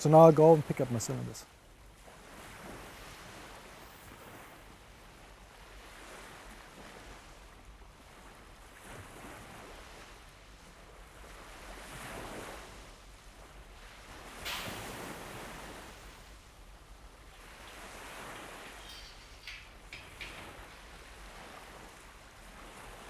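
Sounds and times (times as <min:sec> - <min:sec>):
wind: 0:00.0 - 0:23.0
sea surf: 0:05.3 - 0:23.0.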